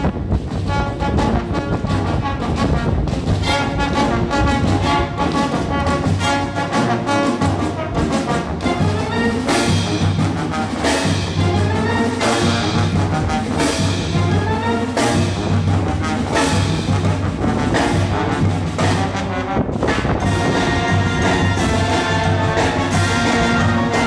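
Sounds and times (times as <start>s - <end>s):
wind on microphone: 0.0s - 6.0s, 17.2s - 24.0s
brass band playing: 0.0s - 24.0s.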